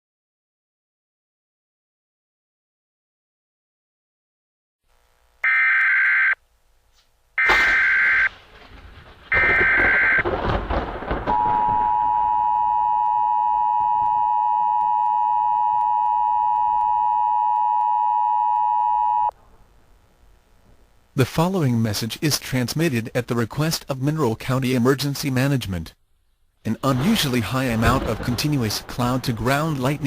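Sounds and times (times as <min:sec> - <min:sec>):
two-tone attention signal: 0:11.4 - 0:19.3
low rumble: 0:26.7 - 0:30.0.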